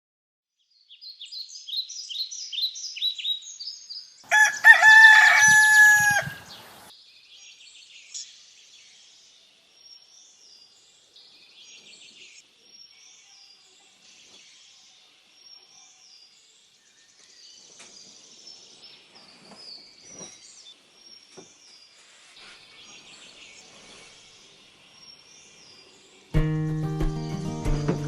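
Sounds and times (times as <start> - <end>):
faint high birdsong: 0.5 - 28.0
songbird singing: 0.6 - 28.0
rooster crowing: 4.3 - 6.9.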